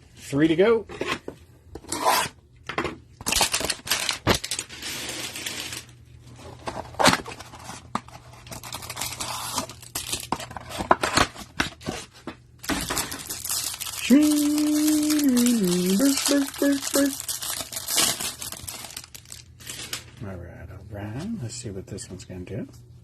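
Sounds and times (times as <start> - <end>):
wrapper crinkling: 3.2 - 6.0, 8.3 - 10.8, 12.6 - 20.2
cardboard tearing: 8.5 - 12.0, 12.6 - 19.9.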